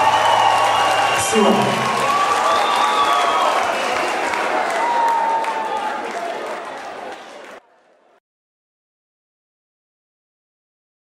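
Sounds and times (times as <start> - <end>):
audience applauding: 0.0 - 8.2.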